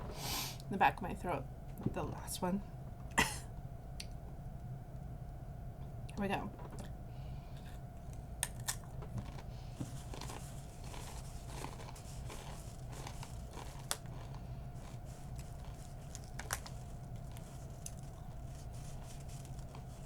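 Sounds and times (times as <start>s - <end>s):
chewing crunchy chips: 7.6s - 20.0s.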